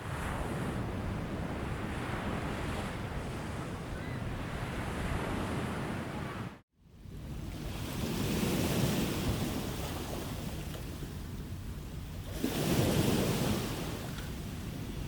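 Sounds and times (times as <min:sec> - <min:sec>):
sea waves surging: 0:12.2 - 0:15.0
surf wash: 0:12.2 - 0:15.0.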